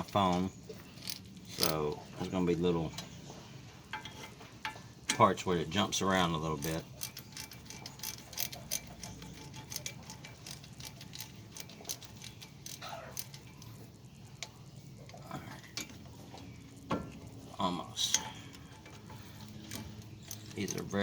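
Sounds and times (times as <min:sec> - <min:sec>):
hand ratchet clicking: 0:00.9 - 0:01.9, 0:06.4 - 0:13.8, 0:18.1 - 0:21.0.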